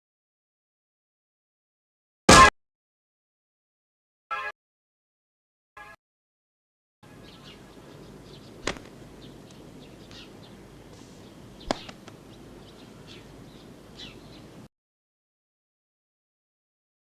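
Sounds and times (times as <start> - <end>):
birds chirping: 7.0 - 14.7
steady low hiss: 7.1 - 14.7.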